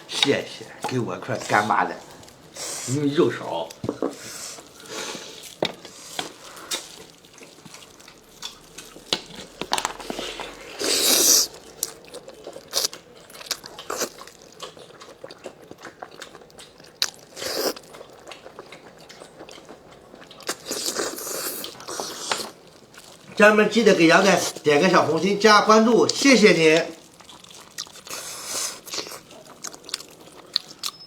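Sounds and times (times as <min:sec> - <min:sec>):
chewing and biting meat: 0:03.7 - 0:23.4, 0:26.1 - 0:31.0.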